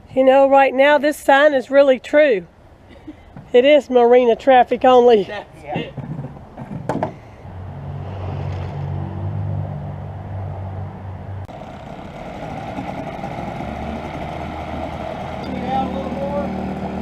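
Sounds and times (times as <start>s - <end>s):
engine humming: 8.3s - 17.0s.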